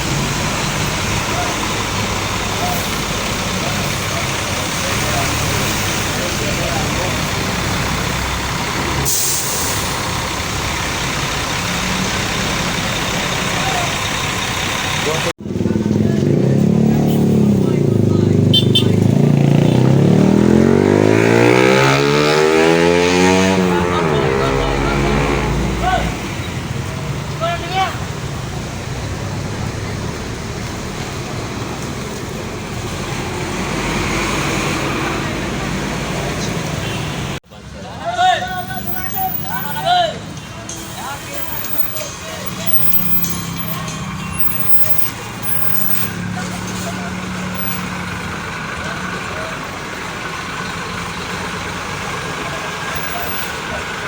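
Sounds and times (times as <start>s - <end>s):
bus diesel engine idling: 0.0s - 18.8s, 23.8s - 33.6s, 34.8s - 54.0s
road traffic rumble: 0.0s - 54.0s
air brake hiss: 9.0s - 10.0s, 40.7s - 42.1s.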